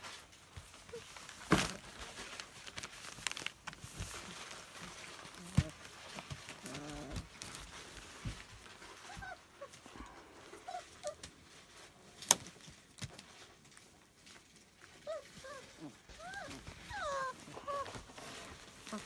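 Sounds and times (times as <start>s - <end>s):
puppies whimpering: 15.1s - 19.0s.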